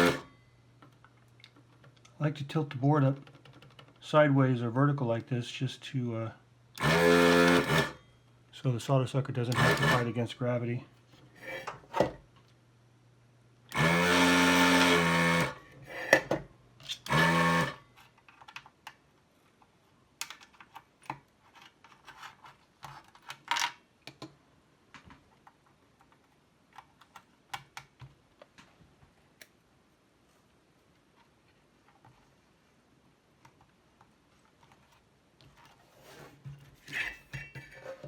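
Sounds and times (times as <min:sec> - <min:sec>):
desoldering vacuum pump running: 0:00.0 - 0:00.2, 0:06.8 - 0:08.0, 0:09.5 - 0:10.1, 0:13.7 - 0:16.2, 0:17.1 - 0:17.8.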